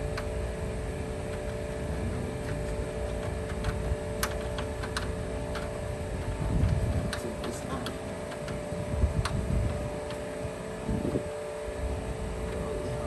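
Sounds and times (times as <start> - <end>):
steady background hum: 0.0 - 13.0
tools clicking on car parts: 3.0 - 8.6.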